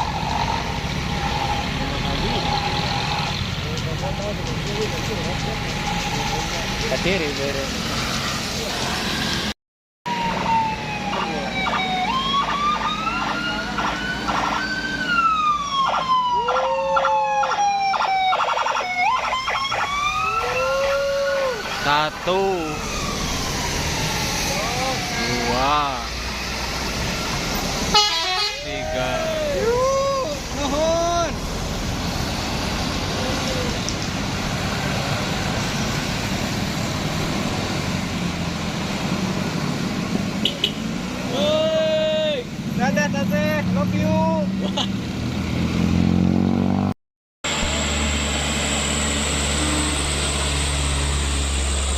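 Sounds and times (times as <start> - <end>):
large vehicle engine running: 0.0 - 9.5, 47.5 - 51.9
tyres on road: 0.0 - 51.9
electronic siren wailing: 10.1 - 30.2.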